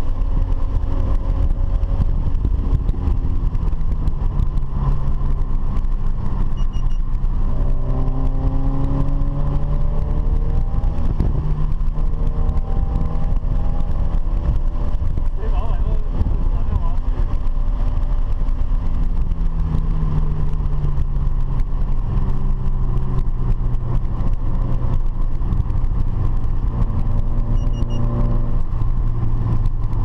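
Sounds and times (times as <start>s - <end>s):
car engine revving: 0.0s - 30.0s
road and wind noise: 0.0s - 30.0s.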